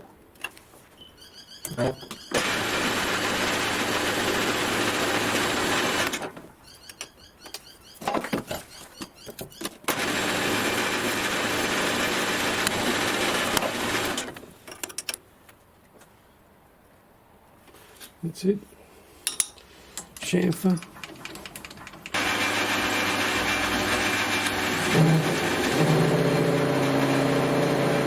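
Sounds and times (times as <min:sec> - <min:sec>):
machine tool motor humming: 0:02.4 - 0:06.2, 0:09.9 - 0:14.3, 0:21.8 - 0:28.0
knocks and clicks from handling: 0:20.0 - 0:22.2.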